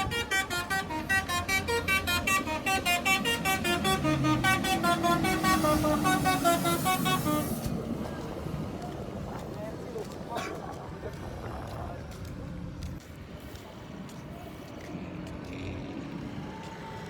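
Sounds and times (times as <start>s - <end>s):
bus horn melody of short toots: 0.0s - 7.7s.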